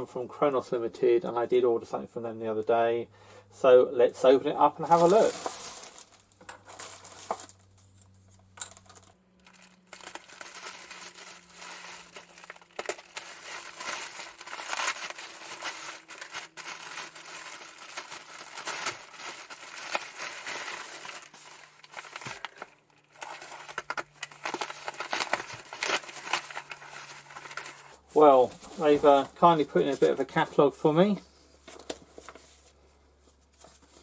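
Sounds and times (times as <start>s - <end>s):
packaging crinkling and rustling: 4.8s - 30.2s, 31.6s - 32.7s
cardboard tearing: 4.9s - 7.5s, 9.4s - 28.0s.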